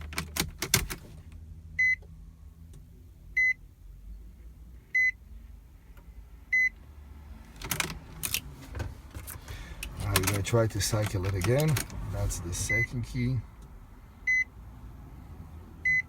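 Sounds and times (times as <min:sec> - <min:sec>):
clicks and rattles: 0:07.6 - 0:12.0.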